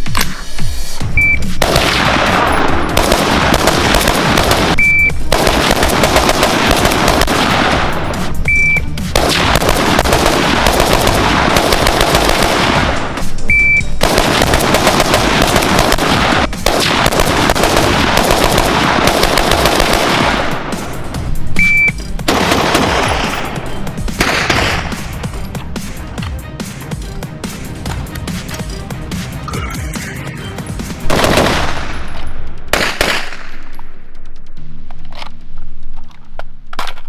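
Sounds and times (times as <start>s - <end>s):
short high beep: 1.2s - 1.5s, 13.5s - 14.0s, 21.6s - 22.0s, 29.5s - 30.6s
rapid gunfire: 1.4s - 26.0s, 30.8s - 34.8s.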